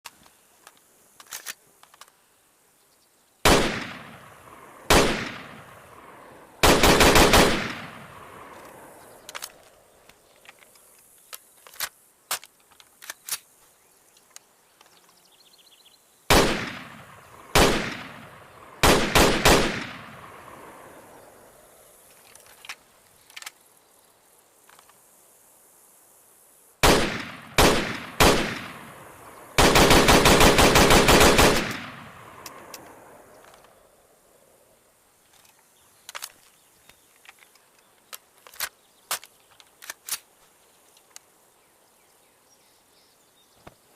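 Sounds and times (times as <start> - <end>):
faint clicks: 0.1 - 2.2, 31.7 - 33.8, 35.2 - 40.3
rifle shots echoing: 3.4 - 9.4, 16.3 - 21.2, 26.8 - 33.2
distant pops: 26.8 - 33.0.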